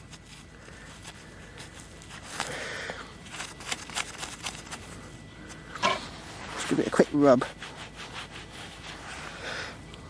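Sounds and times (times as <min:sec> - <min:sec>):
rustling scrape: 0:05.8 - 0:09.3
soft scraping of soil: 0:05.8 - 0:09.4.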